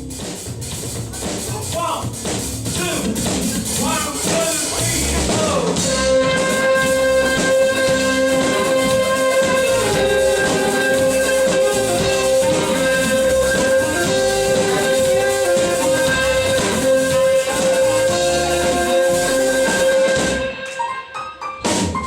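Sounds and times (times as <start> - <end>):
smooth jazz band playing: 0.0 - 22.0
long held note: 5.9 - 20.9.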